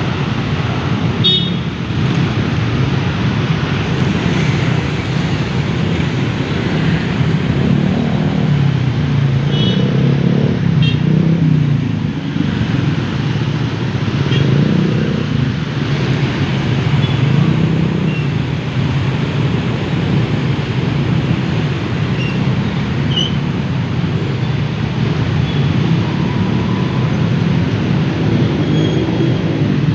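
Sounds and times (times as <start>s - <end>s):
vehicles passing: 0.0s - 29.9s.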